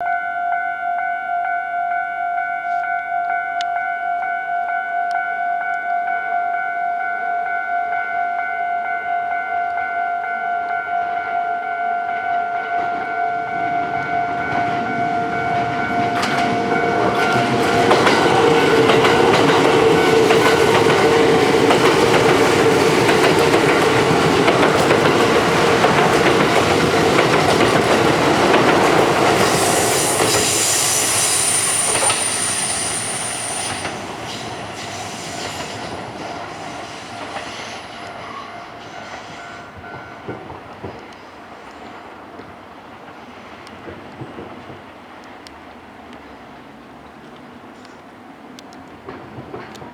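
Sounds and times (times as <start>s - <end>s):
crossing bell warning tone: 0.0s - 40.4s
train wheels clattering over rail joints: 15.6s - 30.9s, 49.0s - 49.9s
wheel squeal: 29.4s - 35.9s.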